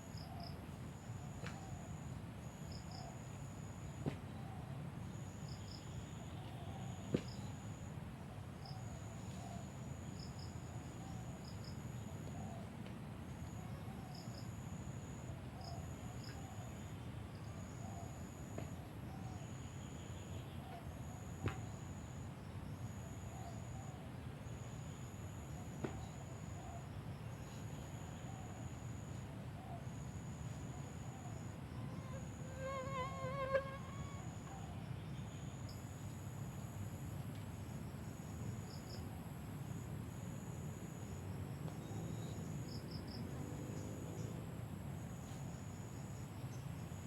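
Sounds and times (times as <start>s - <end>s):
insects trilling: 31.3s - 36.1s.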